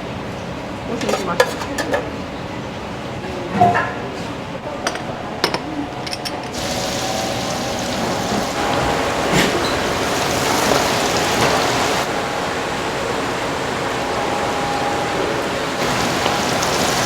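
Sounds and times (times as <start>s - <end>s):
dishes and utensils clinking: 0.9s - 2.2s, 4.8s - 7.2s, 7.9s - 12.1s
steady rushing hiss: 6.6s - 17.0s.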